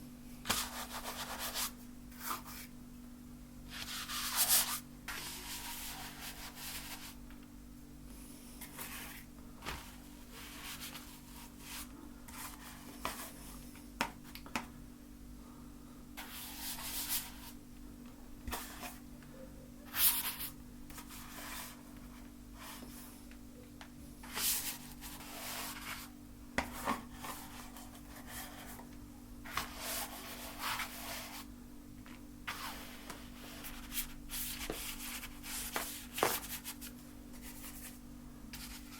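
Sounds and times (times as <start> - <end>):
faint steady hum: 0.0 - 38.9
paintbrush scrubbing canvas: 3.7 - 7.2, 16.2 - 17.6.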